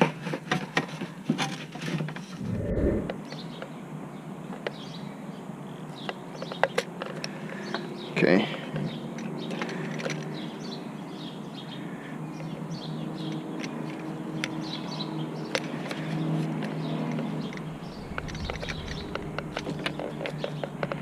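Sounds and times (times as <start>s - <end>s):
steady low hum: 2.4s - 3.3s, 17.4s - 21.0s
birds chirping: 14.6s - 21.0s.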